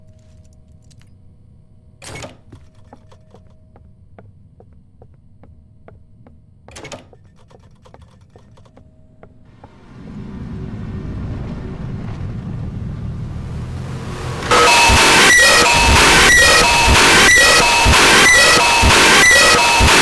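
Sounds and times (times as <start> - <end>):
loud rumble: 9.7 - 20.0
short buzzes: 14.4 - 20.0.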